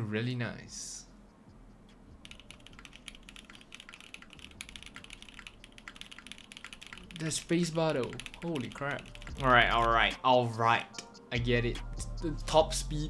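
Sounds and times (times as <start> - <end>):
rapid mechanical keyboard typing: 2.2 - 10.0.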